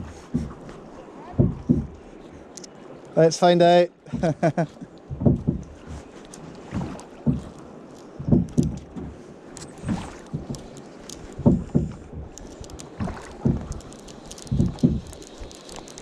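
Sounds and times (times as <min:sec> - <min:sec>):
water slapping against boat hull: 0:00.0 - 0:03.2, 0:04.0 - 0:16.0
faint clicks: 0:01.4 - 0:03.2, 0:04.2 - 0:16.0
light hiss: 0:08.8 - 0:16.0.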